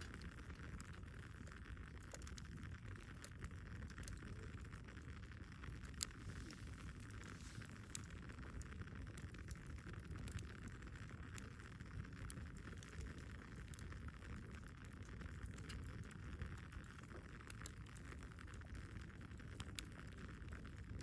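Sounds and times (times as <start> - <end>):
fire flames rushing: 0.0 - 13.8
burning wood crackling and popping: 0.0 - 21.0.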